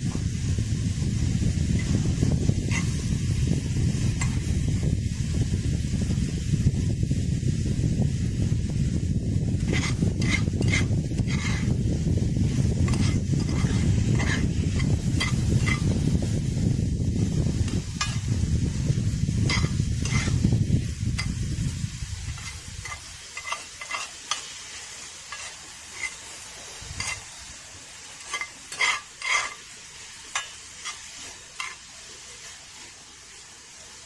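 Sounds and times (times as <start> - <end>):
low rushing rumble: 0.0 - 23.1
utensils clinking on cookware: 12.7 - 16.0, 22.3 - 24.6, 28.1 - 29.7, 30.3 - 31.9.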